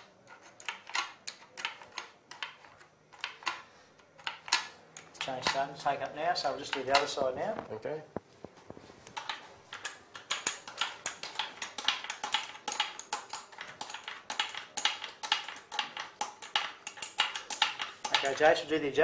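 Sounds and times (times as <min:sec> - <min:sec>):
metal tool clicking and tapping: 0:09.1 - 0:18.5.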